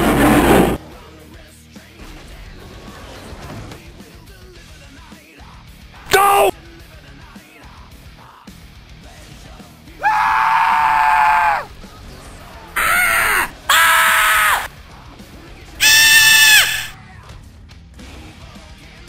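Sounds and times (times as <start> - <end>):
person screaming: 6.1 - 6.5, 10.0 - 11.7, 12.8 - 14.7, 15.8 - 17.0
rough scream burst: 15.8 - 17.0.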